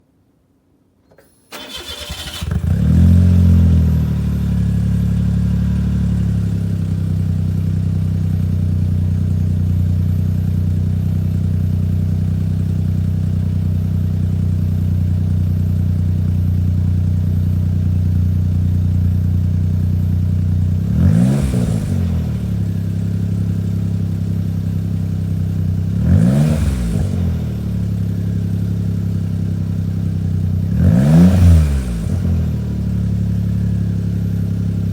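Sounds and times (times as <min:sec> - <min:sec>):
car engine starting and idling: 0:01.1 - 0:34.9
engine revving: 0:01.5 - 0:06.9, 0:20.7 - 0:24.1, 0:25.2 - 0:30.0, 0:30.6 - 0:34.9.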